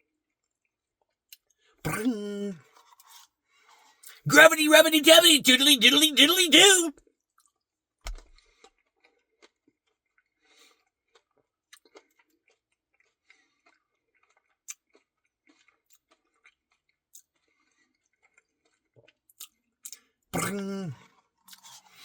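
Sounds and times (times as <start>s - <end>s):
chewing ice cream: 11.1s - 20.8s.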